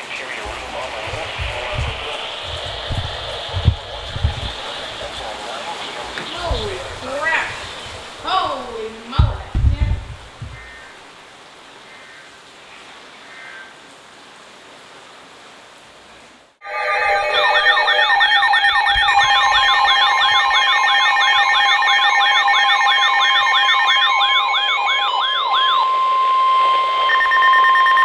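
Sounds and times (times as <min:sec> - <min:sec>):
steady alarm tones: 0:00.0 - 0:11.0, 0:16.6 - 0:28.0
faint hiss: 0:00.0 - 0:16.5
siren-like sweeping alert tone: 0:16.6 - 0:28.0.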